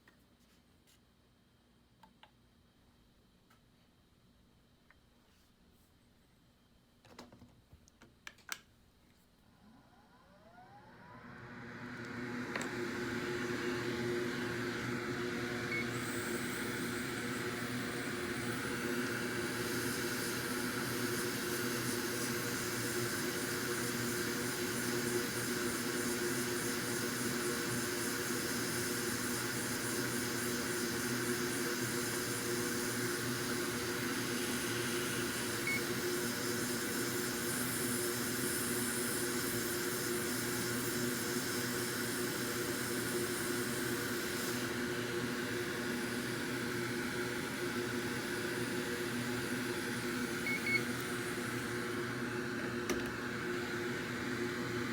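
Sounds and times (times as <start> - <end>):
electric fan whirring: 9.6 - 37.5, 40.6 - 54.9.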